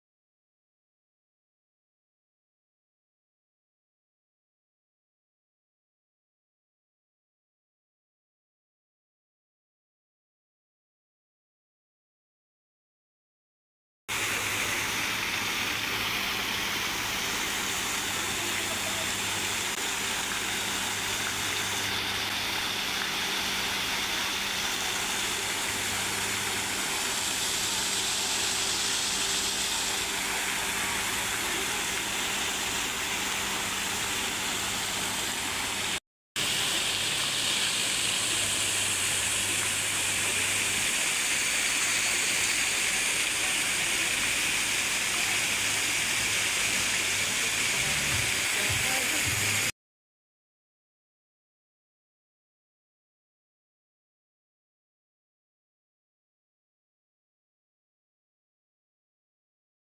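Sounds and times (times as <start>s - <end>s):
water falling and rushing: 14.1s - 49.7s.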